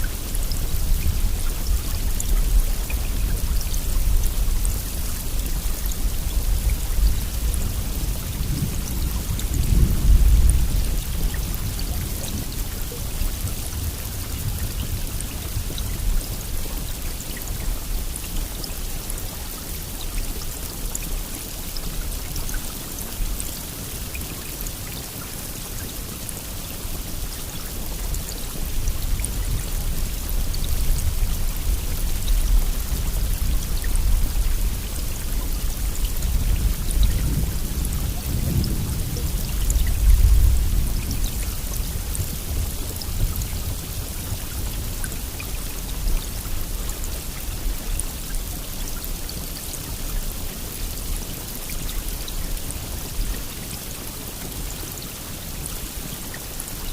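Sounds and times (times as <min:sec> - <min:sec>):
heavy rain hissing: 0:00.0 - 0:56.9.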